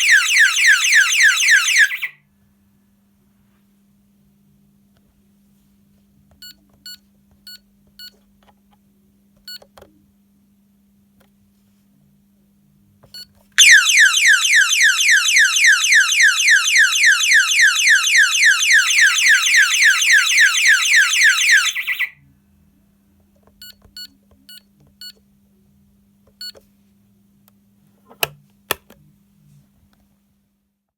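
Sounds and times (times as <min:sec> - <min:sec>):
alarm siren falling sweeps: 0:00.0 - 0:02.1, 0:13.6 - 0:22.1.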